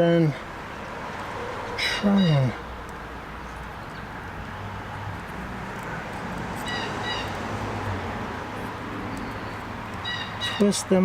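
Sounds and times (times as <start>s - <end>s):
bird chirps: 9.1s - 10.8s.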